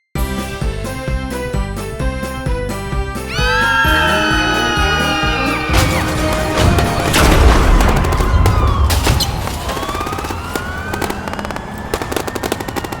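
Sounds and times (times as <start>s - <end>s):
rapid gunfire-like cracks: 5.8s - 13.0s
siren-like tones: 9.5s - 13.0s.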